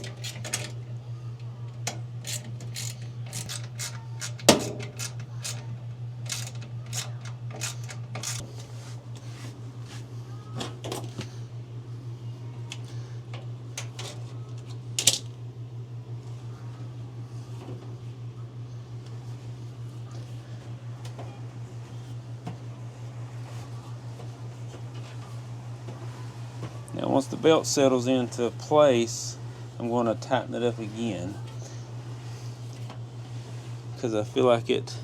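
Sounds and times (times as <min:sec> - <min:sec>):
dryer drum clicks and rattles: 0:00.0 - 0:00.8, 0:01.7 - 0:08.4.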